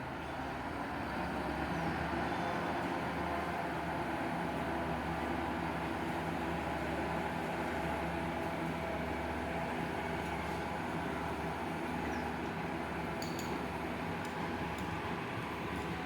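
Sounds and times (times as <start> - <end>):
train engine humming: 3.4 - 16.0.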